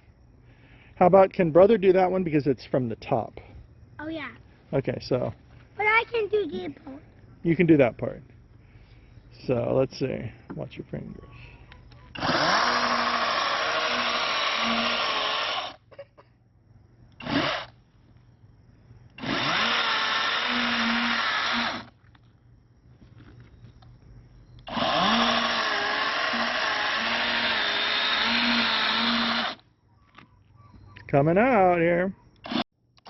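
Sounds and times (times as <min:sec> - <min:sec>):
power saw cutting pumpkin: 0:12.2 - 0:15.8, 0:17.2 - 0:17.8, 0:19.2 - 0:21.9, 0:24.6 - 0:29.6, 0:32.4 - 0:32.6.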